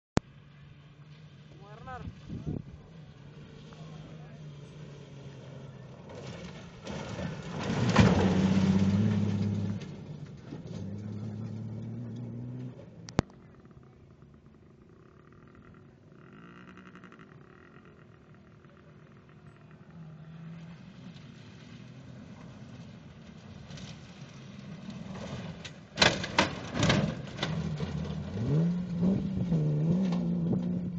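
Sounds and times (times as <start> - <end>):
off-road vehicle engine: 0.2 - 30.9
loud knocks and clatters: 26.0 - 28.2.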